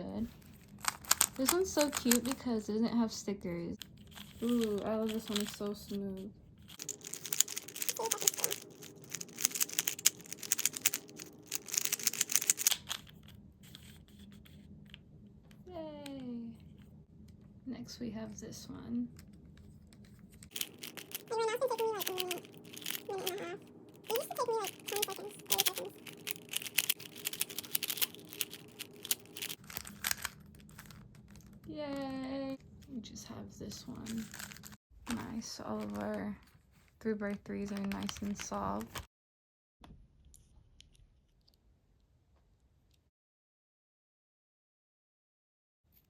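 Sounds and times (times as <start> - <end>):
puzzle cube clicking as turned: 0.6 - 2.4, 3.8 - 5.7, 6.7 - 14.5, 20.4 - 32.0.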